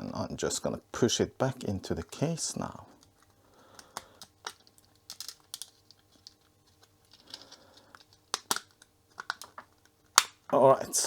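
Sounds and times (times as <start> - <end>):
small plastic clicks and taps: 3.0 - 10.4.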